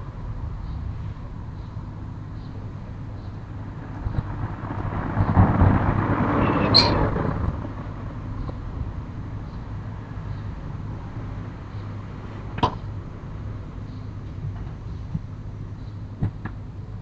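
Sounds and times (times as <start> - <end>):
car passing: 3.3 - 12.5
brief high squeak: 6.4 - 7.1.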